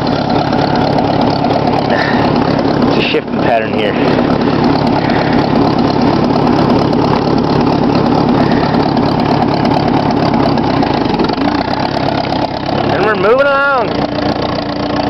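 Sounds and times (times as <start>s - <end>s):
tractor engine running: 0.0s - 15.0s.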